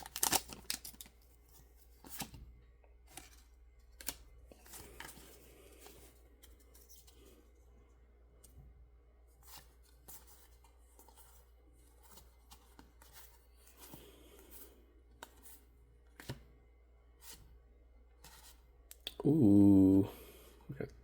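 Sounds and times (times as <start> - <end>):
cards clicking and rustling: 0.0 - 2.4, 3.0 - 7.3, 15.1 - 16.5.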